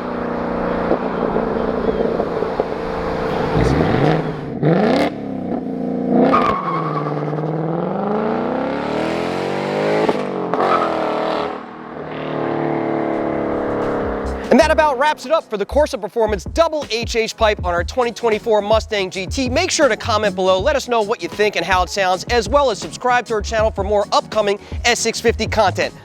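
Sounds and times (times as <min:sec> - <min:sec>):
car engine accelerating past: 0:00.0 - 0:14.8.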